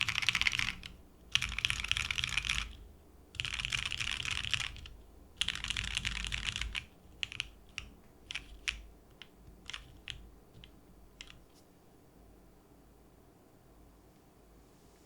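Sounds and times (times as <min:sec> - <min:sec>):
mechanical keyboard keystrokes: 0:00.0 - 0:02.8, 0:03.4 - 0:11.4.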